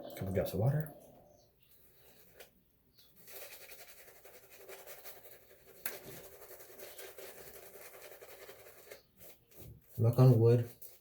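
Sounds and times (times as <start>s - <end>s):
shaving brush scrubbing soap: 3.2s - 11.0s.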